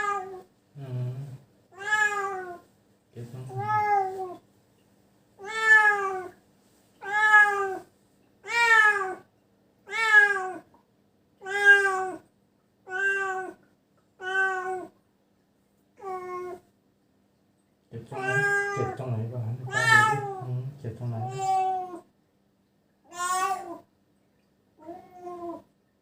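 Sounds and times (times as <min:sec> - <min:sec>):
cat meowing in pain: 0:00.0 - 0:00.4, 0:01.8 - 0:02.6, 0:07.0 - 0:09.2, 0:09.9 - 0:10.6, 0:11.4 - 0:12.2, 0:12.9 - 0:13.6, 0:18.2 - 0:20.5, 0:21.2 - 0:22.0, 0:23.1 - 0:23.8.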